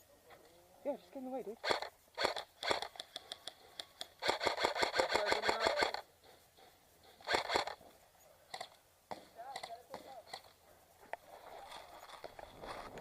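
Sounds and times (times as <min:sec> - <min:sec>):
airsoft guns firing: 0:01.6 - 0:06.0, 0:07.2 - 0:07.8.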